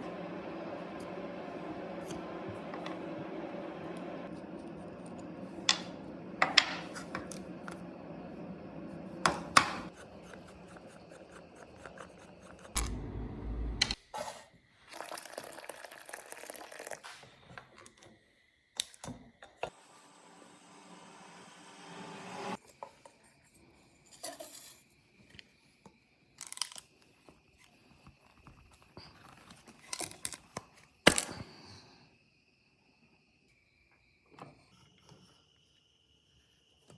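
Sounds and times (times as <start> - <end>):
hiss: 19.7 - 22.6.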